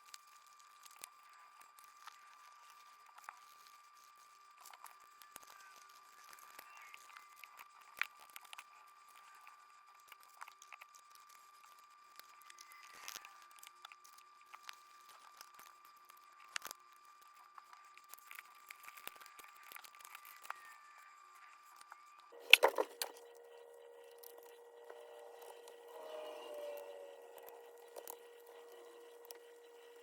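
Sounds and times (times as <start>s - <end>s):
small parts clicking and rustling: 0.0s - 20.9s, 21.6s - 23.3s.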